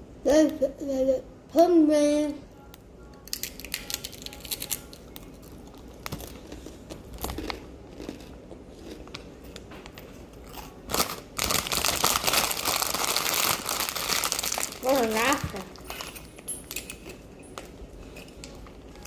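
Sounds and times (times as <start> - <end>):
food packaging crinkling: 3.3 - 9.6, 10.6 - 19.0.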